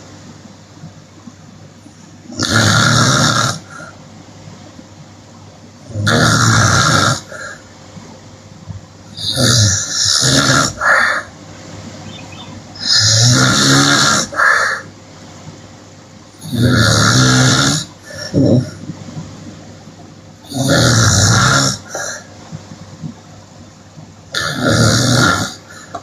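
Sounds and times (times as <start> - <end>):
woman snoring loudly: 2.3 - 3.9, 5.9 - 7.6, 9.2 - 11.3, 12.8 - 14.9, 16.4 - 18.7, 20.5 - 22.2, 24.3 - 25.7.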